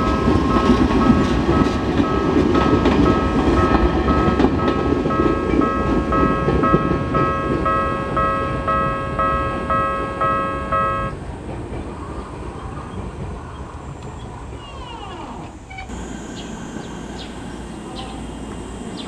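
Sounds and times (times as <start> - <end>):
level crossing warning bell: 0.0 - 11.3, 15.9 - 19.0
passing train rumble: 0.0 - 19.0.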